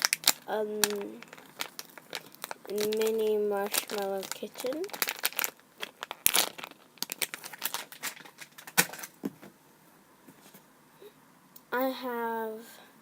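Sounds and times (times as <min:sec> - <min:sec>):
foam toy crinkling and rustling: 0:00.0 - 0:09.4.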